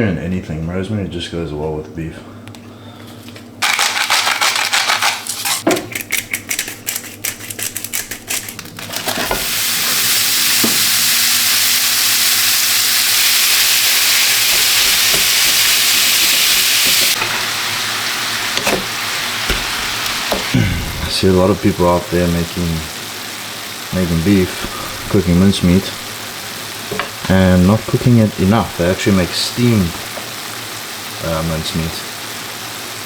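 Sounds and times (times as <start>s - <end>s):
meat frying in a pan: 9.1s - 33.0s.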